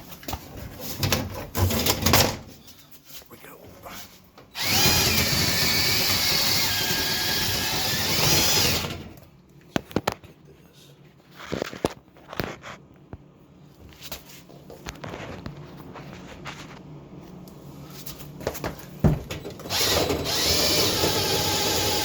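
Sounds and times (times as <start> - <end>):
drill whining: 4.6 - 9.2, 19.6 - 22.0.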